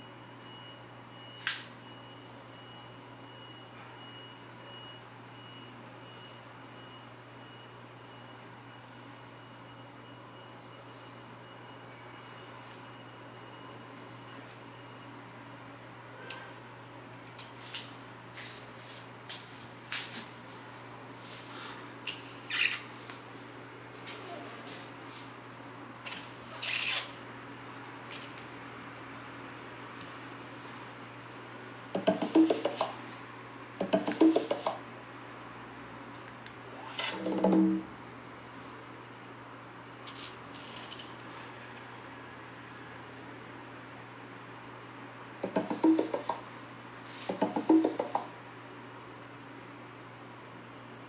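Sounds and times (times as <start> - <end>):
faint high-pitched electronic beep: 0.0 - 15.2.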